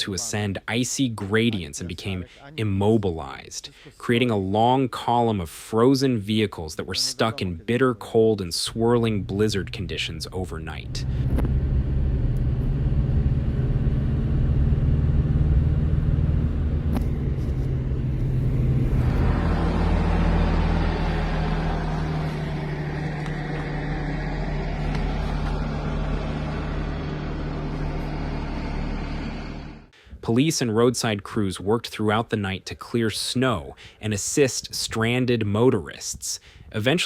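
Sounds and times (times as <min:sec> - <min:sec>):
vehicle engine humming: 0:08.7 - 0:30.0
rushing noise: 0:16.5 - 0:29.9.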